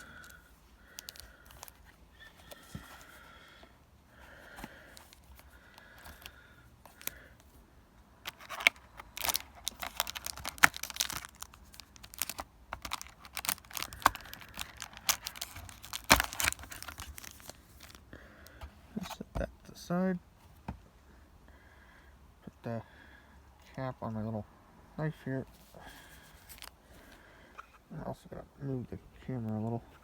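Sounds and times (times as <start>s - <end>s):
plastic wrapping crinkling and tearing: 0.0s - 3.0s, 8.3s - 18.0s, 25.8s - 26.8s.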